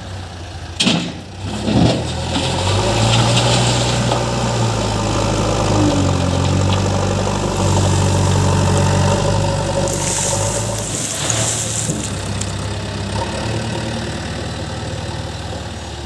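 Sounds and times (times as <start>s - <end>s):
diesel engine running at low revs: 0.0s - 16.0s
high hiss: 7.5s - 12.6s.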